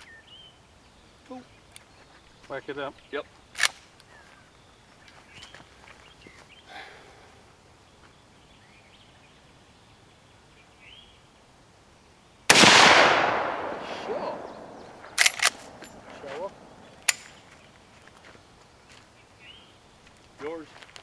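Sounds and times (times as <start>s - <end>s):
rifle shot with echo: 12.5s - 17.4s.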